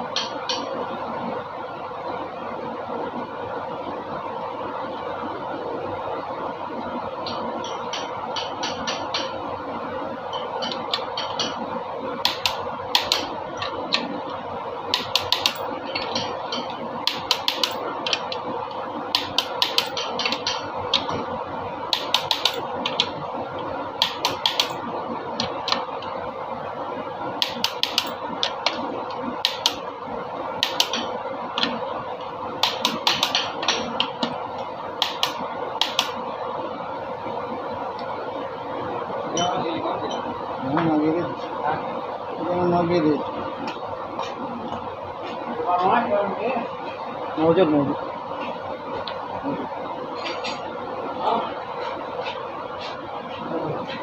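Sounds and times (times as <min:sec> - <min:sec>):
steady hum: 0:00.0 - 0:54.0
hand tools clicking on metal: 0:15.0 - 0:18.4, 0:19.2 - 0:21.1.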